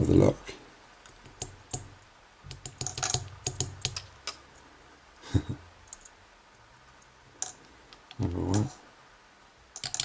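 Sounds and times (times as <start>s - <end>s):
small metal tools clicking: 2.6s - 4.4s, 9.8s - 10.0s.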